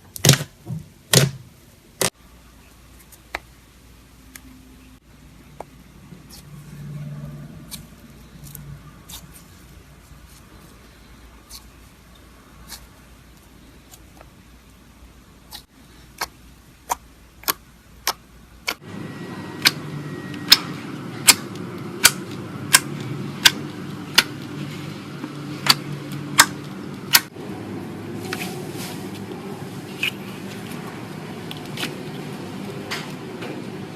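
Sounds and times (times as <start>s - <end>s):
slime being squished: 15.5s - 18.8s.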